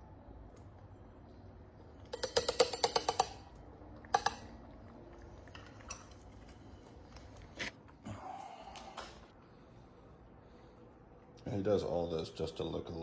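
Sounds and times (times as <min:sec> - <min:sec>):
spoon tapping dish: 0:02.1 - 0:03.4.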